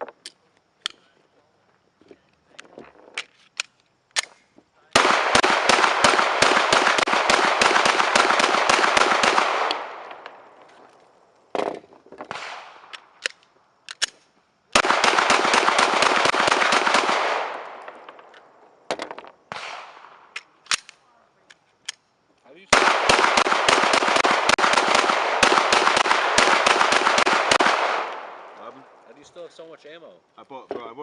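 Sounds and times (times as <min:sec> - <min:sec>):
single gunshots: 0:04.9 - 0:10.4, 0:11.6 - 0:13.0, 0:14.7 - 0:18.2, 0:18.9 - 0:20.9, 0:22.7 - 0:28.9
rapid gunfire: 0:05.0 - 0:09.7, 0:14.8 - 0:17.6, 0:22.7 - 0:28.1.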